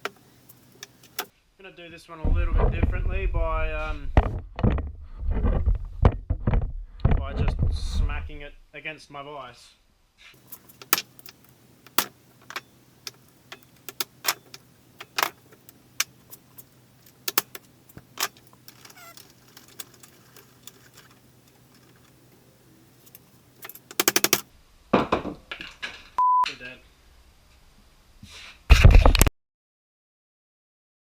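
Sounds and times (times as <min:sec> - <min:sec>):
metal yoke clanking on vise: 0:23.0 - 0:24.4.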